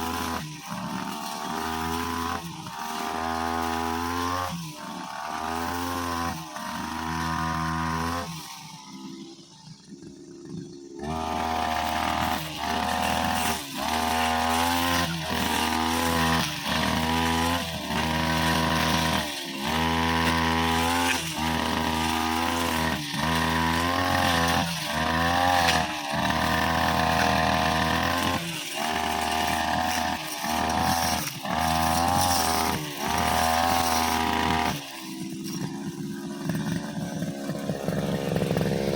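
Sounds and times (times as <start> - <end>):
brushcutter engine revving: 0.0 - 38.9.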